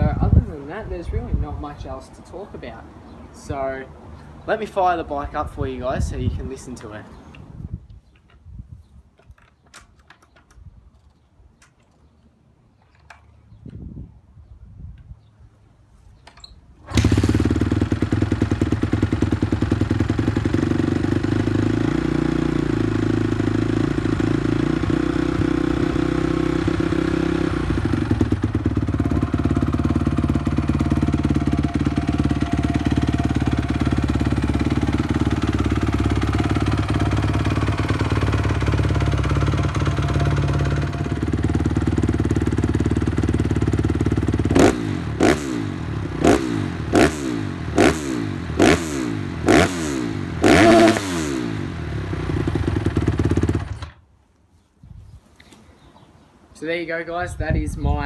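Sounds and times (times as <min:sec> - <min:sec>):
motorcycle engine idling: 0:17.0 - 0:54.0.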